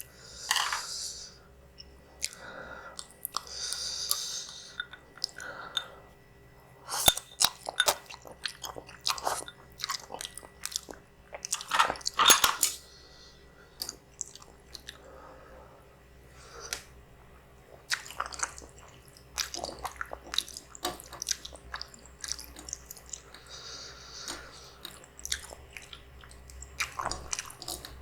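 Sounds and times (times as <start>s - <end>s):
wet chewing with mouth clicks: 2.2s - 5.8s, 6.9s - 12.8s, 13.8s - 15.1s, 17.7s - 28.0s.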